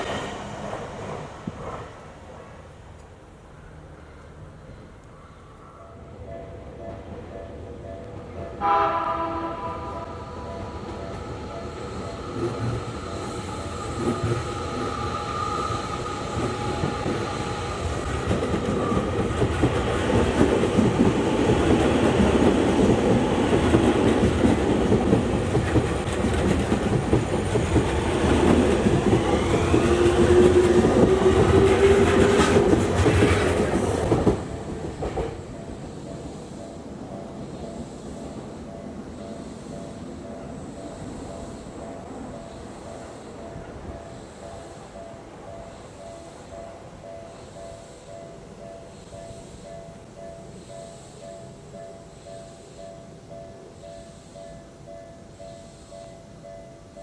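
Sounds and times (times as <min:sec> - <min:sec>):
train wheels clattering over rails: 0:10.6 - 0:46.3.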